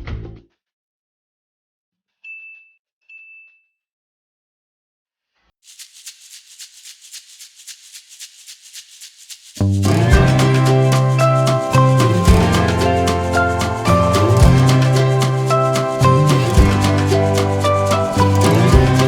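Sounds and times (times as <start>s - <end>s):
rhythmic shaker rattle: 5.6s - 19.0s
music: 9.6s - 19.0s.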